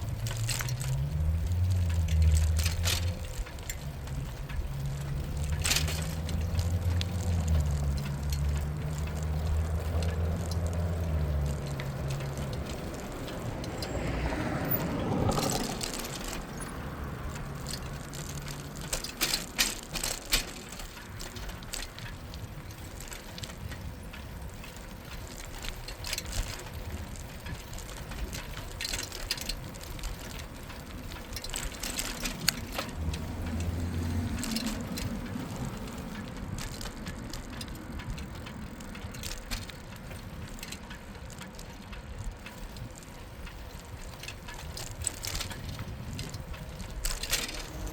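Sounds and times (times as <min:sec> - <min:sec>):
bicycle tyres rolling: 0:00.0 - 0:47.9
bike clicking and rattling: 0:00.0 - 0:47.9
freewheel ratchet ticking: 0:00.0 - 0:47.9.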